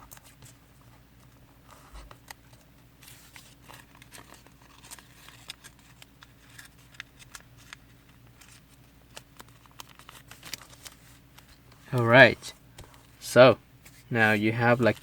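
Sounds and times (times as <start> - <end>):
paper folding crinkles and taps: 0.0 - 13.2, 13.8 - 15.0.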